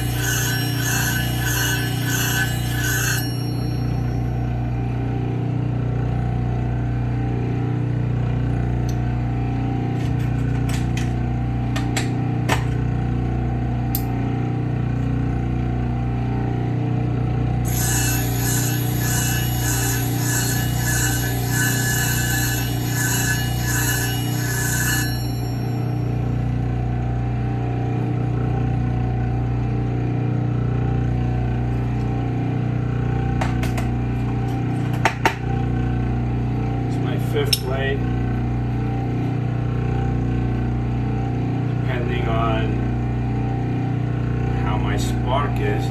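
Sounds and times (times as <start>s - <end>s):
sharpening machine motor hum: 0.0s - 5.0s, 17.6s - 26.8s.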